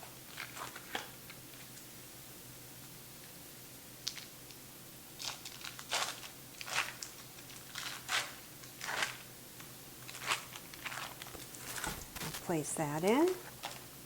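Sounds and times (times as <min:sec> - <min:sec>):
foil wrapper crinkling: 0:05.2 - 0:09.3, 0:10.0 - 0:12.6, 0:13.3 - 0:13.9.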